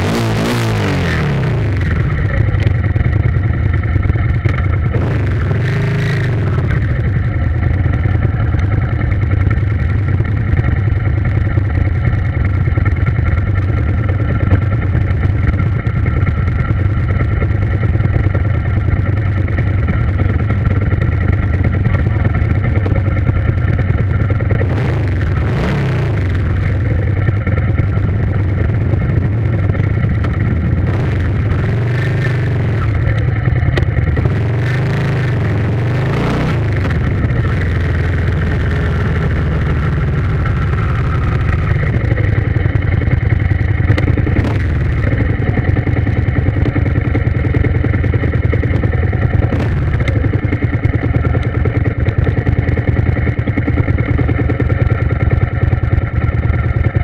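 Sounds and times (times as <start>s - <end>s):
engine running steadily: 0.0s - 57.0s.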